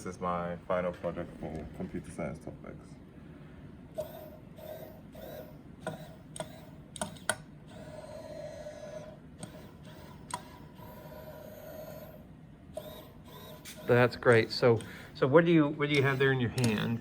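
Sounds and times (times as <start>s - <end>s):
robot motors whirring: 4.0s - 12.2s, 12.8s - 14.9s, 15.9s - 17.0s
sharp clicks: 16.6s - 16.9s.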